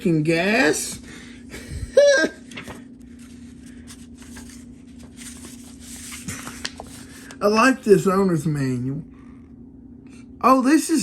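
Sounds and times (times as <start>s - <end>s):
steady low hum: 0.0s - 11.0s
paper rustling and clicks: 2.5s - 7.4s.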